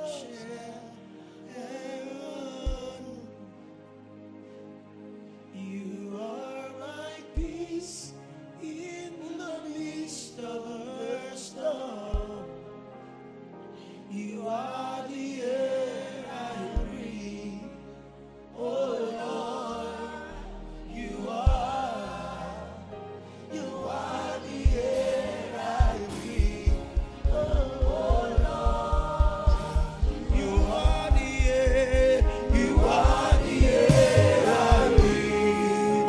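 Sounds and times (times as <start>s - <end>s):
gospel worship song: 0.0s - 36.0s
voices singing: 18.5s - 36.0s
steady beat: 24.6s - 36.0s.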